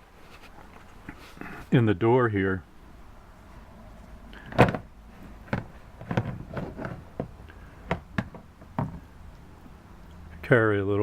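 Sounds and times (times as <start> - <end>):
hard objects knocking in car door pocket: 4.5 - 9.1.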